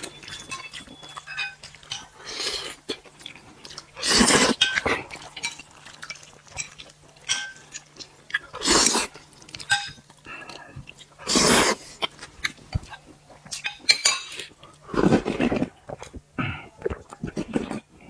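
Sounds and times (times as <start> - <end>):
chopsticks clinking against bowls: 0.0 - 2.6, 4.5 - 5.7, 6.6 - 7.9, 9.6 - 10.1, 13.5 - 14.5
person chewing: 0.0 - 18.0.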